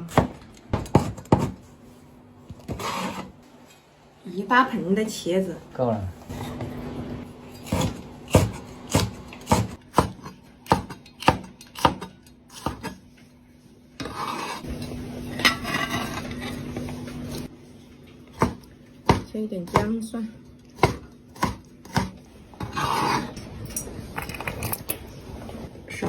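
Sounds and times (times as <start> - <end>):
knife chopping on wooden board: 0.1 - 1.6, 7.6 - 13.0, 18.4 - 20.0, 20.8 - 23.2.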